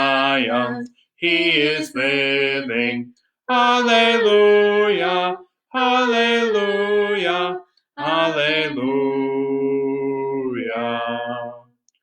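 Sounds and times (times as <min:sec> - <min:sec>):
man and woman singing a hymn: 0:00.0 - 0:11.7.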